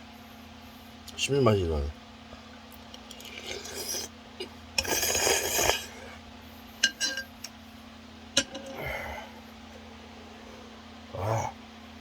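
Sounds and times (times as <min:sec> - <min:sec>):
person slurping noodles: 0:03.1 - 0:04.1, 0:04.8 - 0:06.0.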